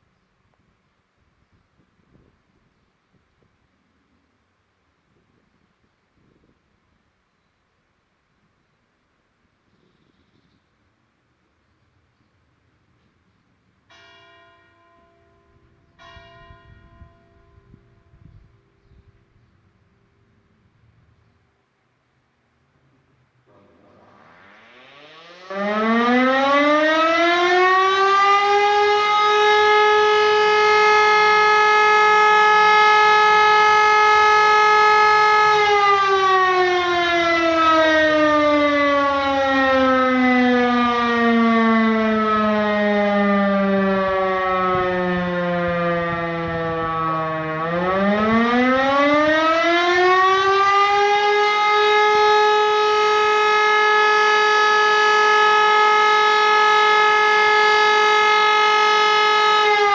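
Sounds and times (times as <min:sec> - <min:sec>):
warning siren wailing: 0:23.5 - 0:59.9.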